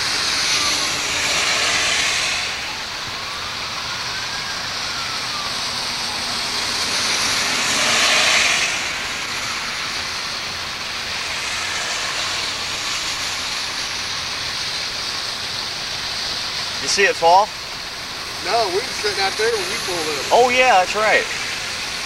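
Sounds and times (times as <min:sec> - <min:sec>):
steady rushing background noise: 0:00.0 - 0:22.0
vehicle passing: 0:06.0 - 0:14.1.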